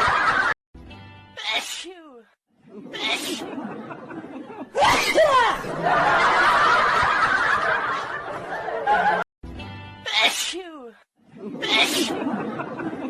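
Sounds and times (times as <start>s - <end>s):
person sneezing: 1.4s - 2.0s, 2.9s - 3.5s, 10.1s - 10.7s, 11.6s - 12.2s.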